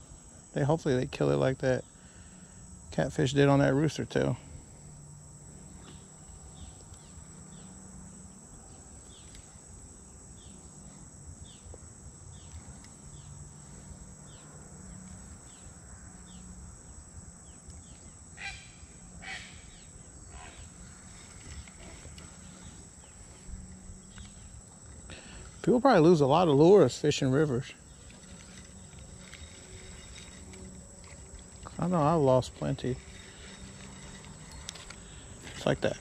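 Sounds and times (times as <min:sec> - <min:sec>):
high-pitched insect drone: 0:00.0 - 0:36.0
harsh bird calls: 0:17.8 - 0:23.4.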